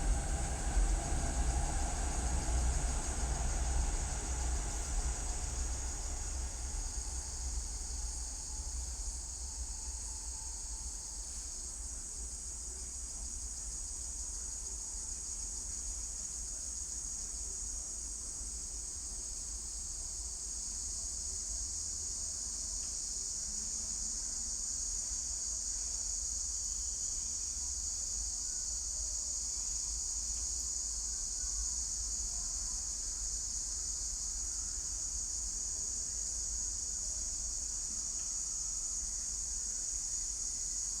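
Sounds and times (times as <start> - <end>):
low distant rumble: 0.0 - 11.2
shrill insect chorus: 0.0 - 18.1, 22.7 - 41.0.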